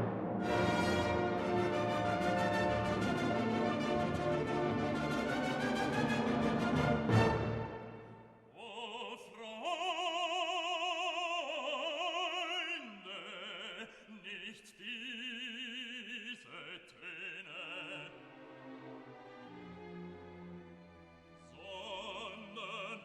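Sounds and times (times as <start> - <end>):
orchestra: 0.0 - 8.4, 17.7 - 23.0.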